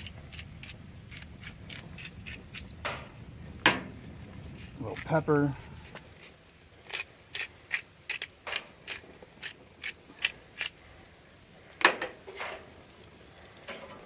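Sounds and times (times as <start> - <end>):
pepper grinder rasping: 0.0 - 2.8, 6.2 - 10.8.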